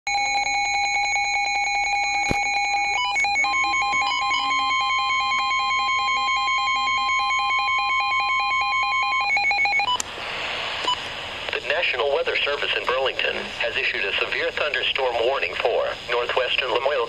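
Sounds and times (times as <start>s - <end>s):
electronic two-pitch warble alarm: 0.1s - 9.9s
steady single alarm tone: 0.1s - 10.0s.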